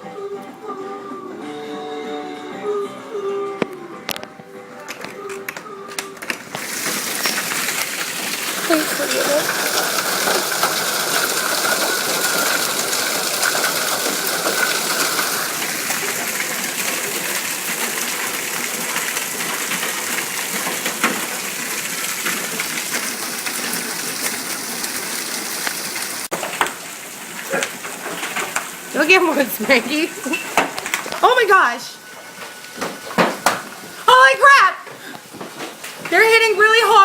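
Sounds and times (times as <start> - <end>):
hailstone impacts: 6.4 - 25.0
heavy rain hissing: 6.4 - 37.0.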